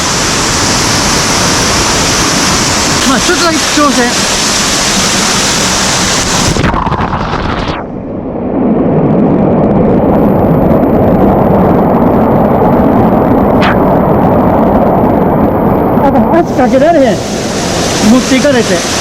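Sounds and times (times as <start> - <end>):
waterfall rushing water: 0.0 - 6.5, 16.3 - 19.0.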